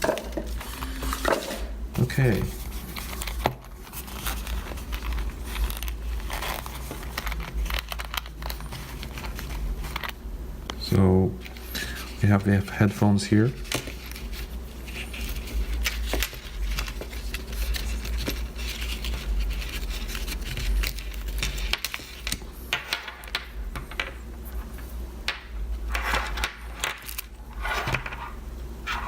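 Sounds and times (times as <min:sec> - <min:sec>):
low steady rumble: 0:00.0 - 0:29.0
plastic packaging clicks and rustling: 0:02.2 - 0:10.2, 0:14.9 - 0:24.1.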